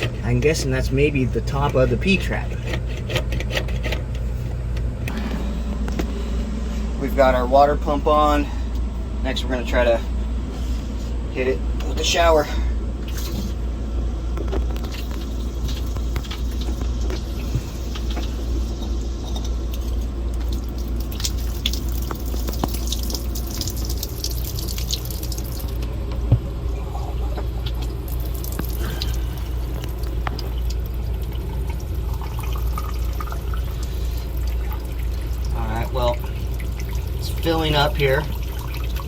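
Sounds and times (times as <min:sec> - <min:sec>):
low hum: 0:00.0 - 0:39.0
shower water splashing: 0:14.8 - 0:25.9, 0:26.6 - 0:39.0.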